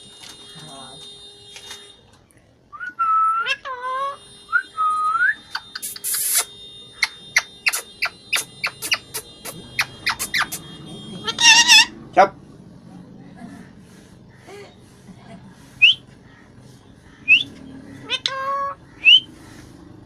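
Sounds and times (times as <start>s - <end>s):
parrot whistling: 2.8s - 12.0s, 15.8s - 16.0s, 17.2s - 19.3s
parrot screeching: 3.4s - 4.2s, 5.5s - 10.6s, 11.2s - 12.0s, 17.2s - 19.3s
parrot chirping: 4.8s - 12.0s, 15.8s - 16.4s, 17.0s - 19.4s.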